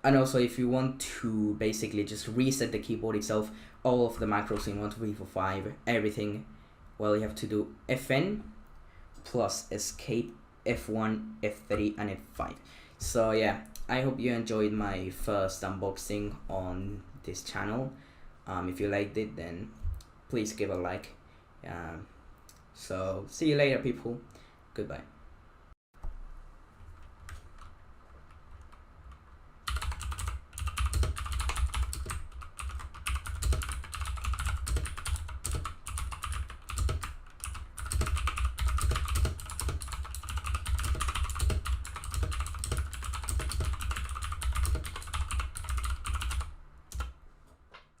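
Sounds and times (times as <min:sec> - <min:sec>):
fast typing on mechanical keyboard: 0:29.6 - 0:47.1.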